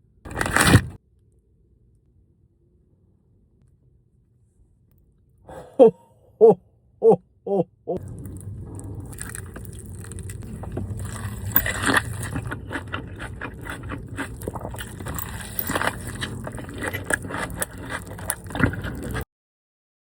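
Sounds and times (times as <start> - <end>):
paper wrapping crinkling: 0.3 - 1.0.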